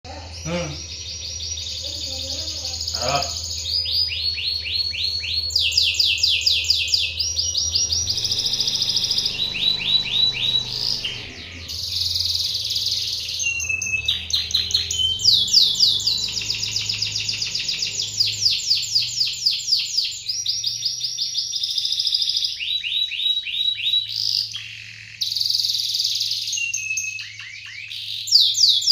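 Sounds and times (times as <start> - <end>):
canary singing fast trills: 0.0 - 28.9
faint low hum: 0.1 - 22.0.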